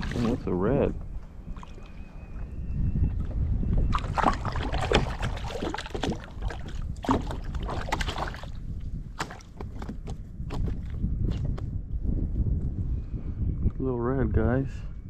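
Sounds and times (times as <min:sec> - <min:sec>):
water splashing against kayak: 0:00.0 - 0:00.6, 0:03.1 - 0:11.6
wind buffeting microphone: 0:00.0 - 0:15.0.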